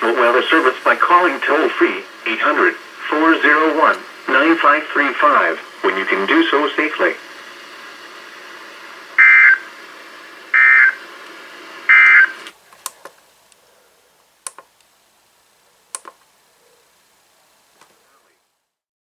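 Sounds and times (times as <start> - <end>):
receiver hiss: 0.0 - 18.8
digital data screeches: 9.2 - 9.6, 10.6 - 11.0, 11.9 - 12.4
sharp clicks: 14.4 - 14.9, 15.9 - 16.3.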